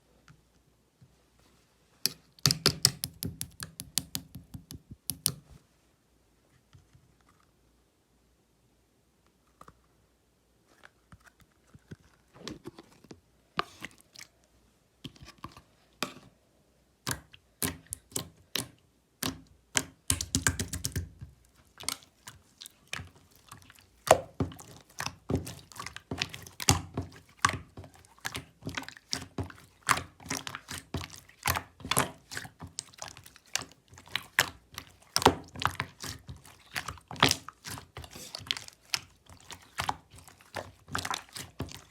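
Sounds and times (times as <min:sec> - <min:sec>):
slime squishing with sticky clicks: 0:02.1 - 0:05.5, 0:17.0 - 0:41.9.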